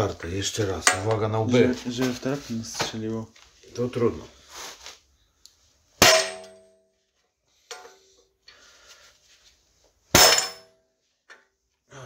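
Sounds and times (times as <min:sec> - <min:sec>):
hammer blows clanging on metal: 0:06.0 - 0:06.7, 0:10.2 - 0:10.7.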